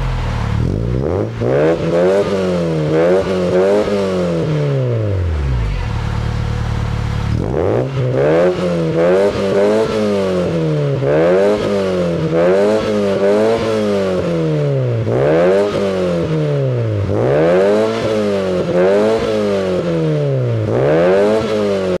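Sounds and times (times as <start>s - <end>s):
engine revving in quick blips: 0.0s - 5.7s.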